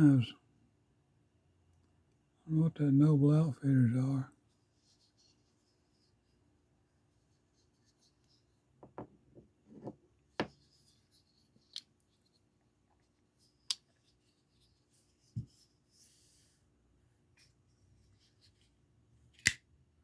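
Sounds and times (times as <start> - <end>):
knife blade snapping open and shut: 19.4 - 19.6.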